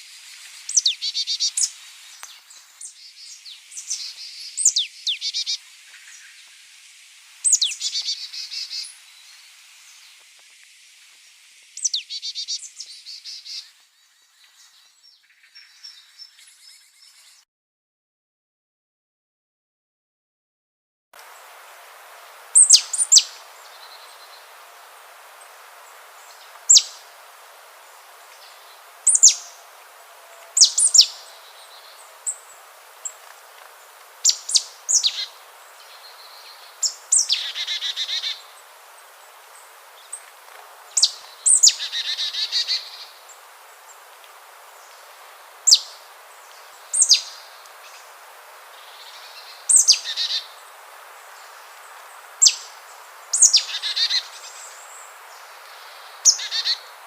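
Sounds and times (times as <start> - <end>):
steady hiss: 0.0 - 14.8, 21.2 - 57.0
buzzy rasping bird calls: 22.6 - 24.4, 28.4 - 29.7, 30.4 - 33.2, 34.2 - 38.6, 40.9 - 43.4, 48.8 - 50.6, 53.3 - 54.7, 55.7 - 57.0.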